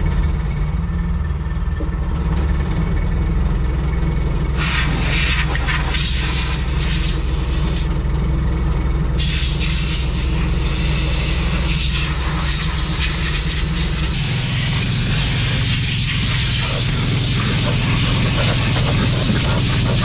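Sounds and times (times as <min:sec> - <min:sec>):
bulldozer diesel engine running: 0:00.0 - 0:20.0
strong hiss: 0:09.2 - 0:20.0.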